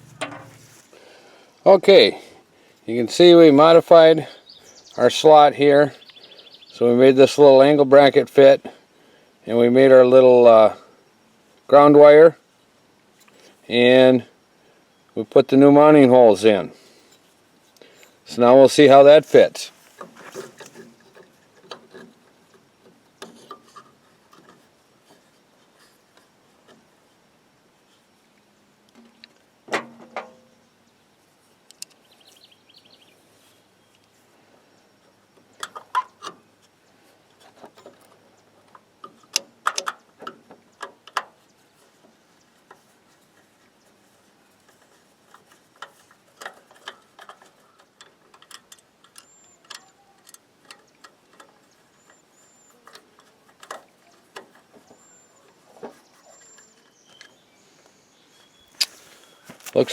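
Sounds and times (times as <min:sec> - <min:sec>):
metal parts clinking and knocking: 0:00.0 - 0:00.8.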